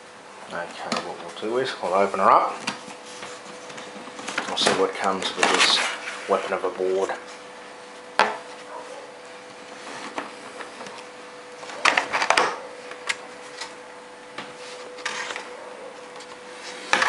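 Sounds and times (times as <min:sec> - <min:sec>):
scraping and rustling: 0:02.5 - 0:07.5, 0:14.5 - 0:17.0.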